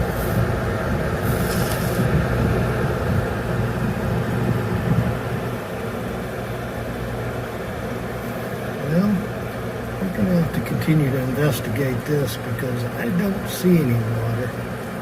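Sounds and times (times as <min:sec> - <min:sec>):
drain pump humming: 0:00.0 - 0:15.0.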